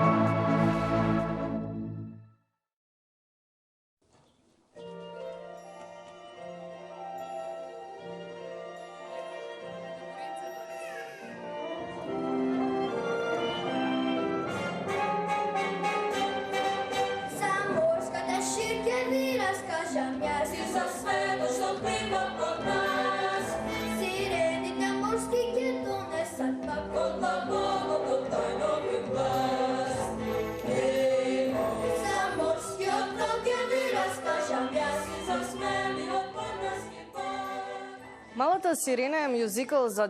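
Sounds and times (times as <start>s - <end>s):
instrumental accompaniment: 4.7s - 38.4s
choir singing: 11.6s - 38.3s.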